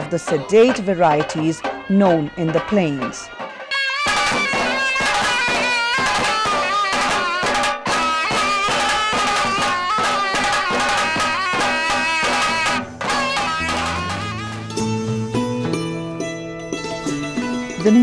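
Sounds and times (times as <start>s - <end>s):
ornamented folk melody: 0.0s - 18.0s.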